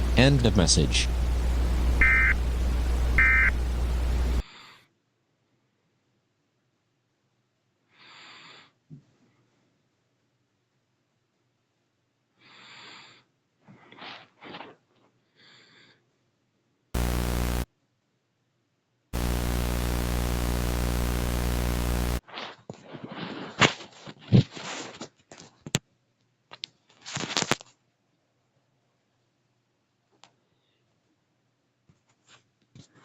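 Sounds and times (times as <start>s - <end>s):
harsh electronic buzzing tone: 0.0s - 4.4s, 17.0s - 17.7s, 19.2s - 22.2s.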